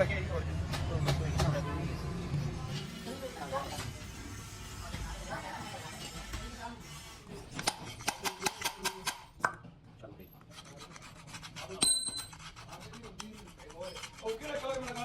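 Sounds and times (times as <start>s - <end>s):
metal tools scraping and clicking: 11.7s - 14.9s.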